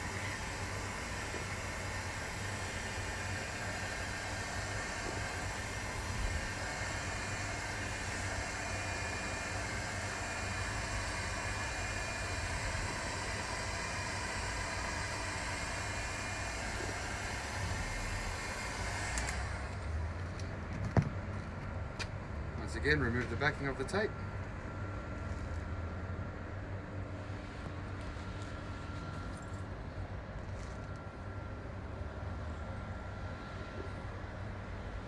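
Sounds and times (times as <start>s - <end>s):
hot-air blower hissing: 0.0s - 20.3s.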